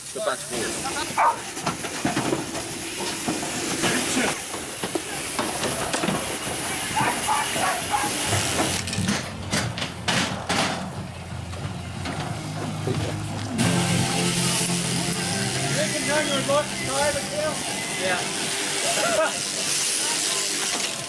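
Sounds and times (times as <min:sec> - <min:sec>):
clanks and knocks: 0:01.3 - 0:07.1, 0:08.2 - 0:13.6
machine hissing: 0:12.7 - 0:21.0.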